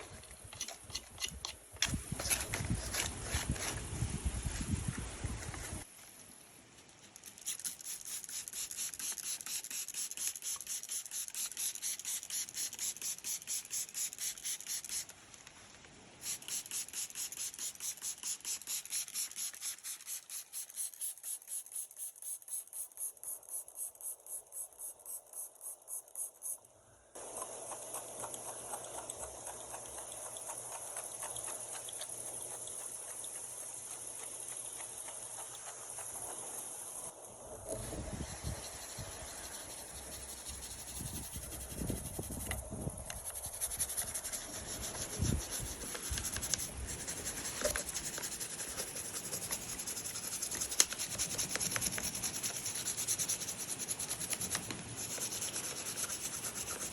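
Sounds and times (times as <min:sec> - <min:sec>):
steady hiss: 0:03.1 - 0:56.9
brush scrubbing plastic: 0:07.0 - 0:15.1, 0:16.2 - 0:23.8, 0:38.1 - 0:42.5, 0:43.1 - 0:56.9.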